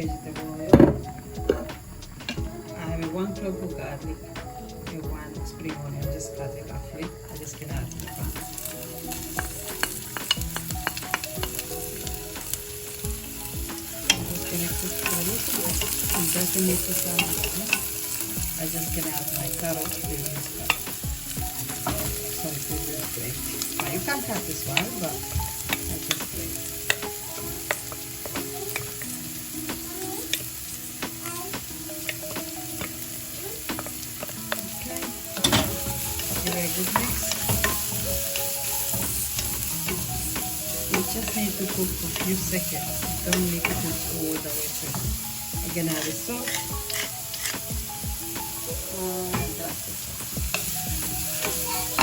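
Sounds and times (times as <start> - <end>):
food sizzling in oil: 0.0 - 52.0
utensil stirring against pan: 0.0 - 52.0
utensil scraping a pan: 33.7 - 48.0.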